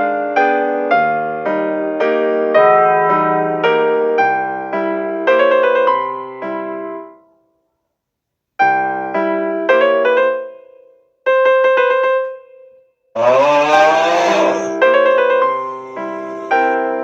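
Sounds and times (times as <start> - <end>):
piano chords: 1.0 - 7.1, 13.2 - 16.8
harsh noisy sliding-pitch sound: 13.2 - 16.8.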